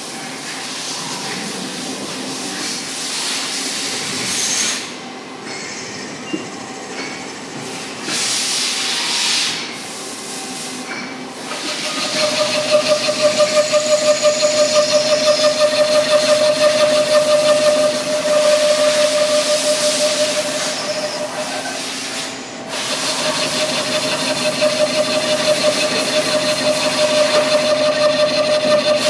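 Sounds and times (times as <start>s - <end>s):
pulsing machine whine: 11.2s - 29.0s
lathe machine noise: 11.3s - 29.0s.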